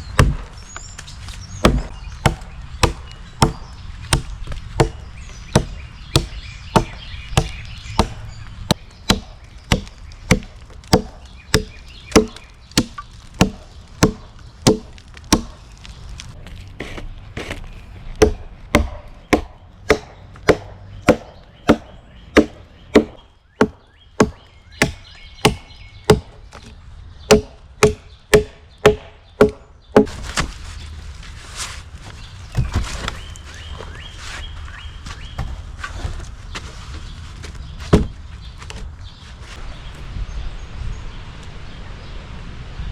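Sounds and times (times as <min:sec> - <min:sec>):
axe chopping into log: 0:00.2 - 0:00.5, 0:01.6 - 0:15.6, 0:18.2 - 0:26.7, 0:27.3 - 0:30.5, 0:37.9 - 0:38.8
soft rustling: 0:30.1 - 0:39.6.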